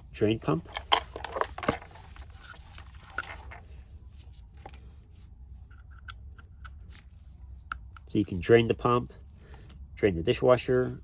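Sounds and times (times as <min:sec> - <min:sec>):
clicks and light scraping: 0:00.4 - 0:08.6.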